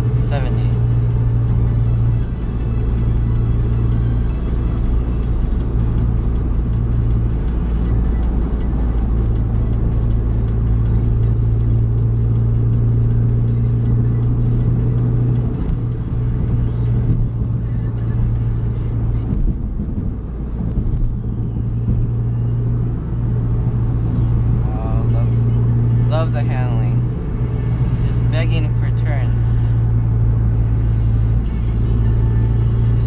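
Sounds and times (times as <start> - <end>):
car engine droning inside cabin: 0.0 - 33.0.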